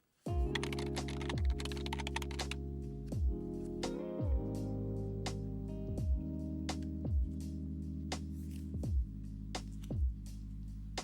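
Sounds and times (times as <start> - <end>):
soft beat with low thump: 0.3 - 1.8, 2.4 - 11.0
mellow chords: 0.3 - 11.0.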